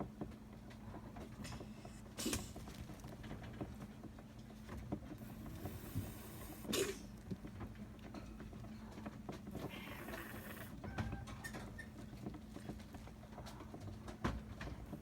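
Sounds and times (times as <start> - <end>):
animal breathing noisily: 5.2 - 7.0, 9.5 - 10.8.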